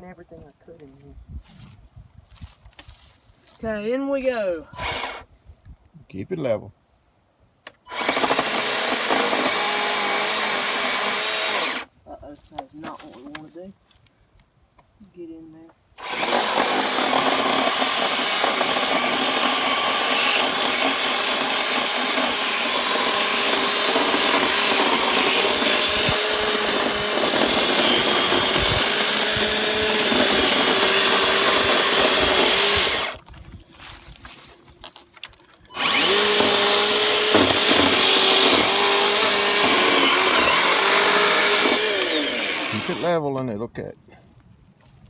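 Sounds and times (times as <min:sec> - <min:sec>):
chainsaw cutting into tree trunk: 0:04.8 - 0:05.3, 0:07.9 - 0:11.9, 0:16.0 - 0:33.2, 0:35.7 - 0:43.1.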